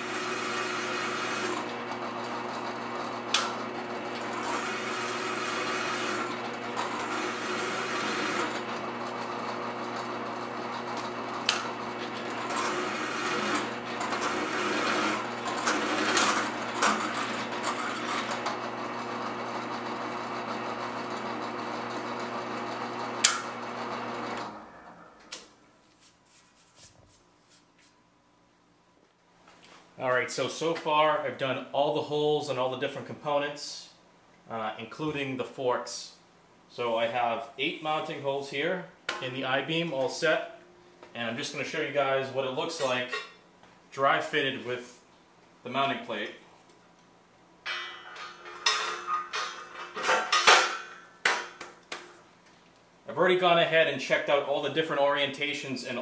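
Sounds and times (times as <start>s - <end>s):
electric drill boring through steel: 0.0s - 24.7s.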